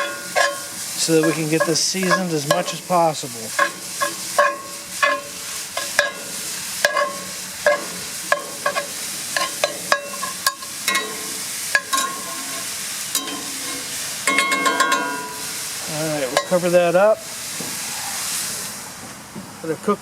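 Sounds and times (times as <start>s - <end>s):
metal spatula scraping a pan: 0.0s - 15.6s
sausage sizzling in a skillet: 0.0s - 19.8s.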